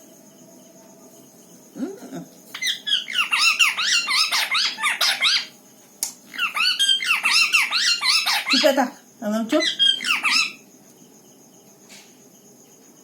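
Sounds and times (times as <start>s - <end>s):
parrot squeaky chirps: 2.6s - 5.5s, 6.3s - 8.8s, 9.6s - 10.6s.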